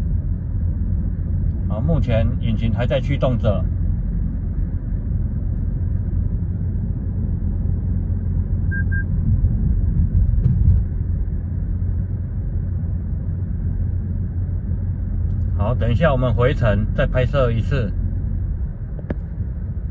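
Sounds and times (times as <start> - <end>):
road and engine rumble: 0.0 - 19.9
short high beeps: 8.7 - 9.1.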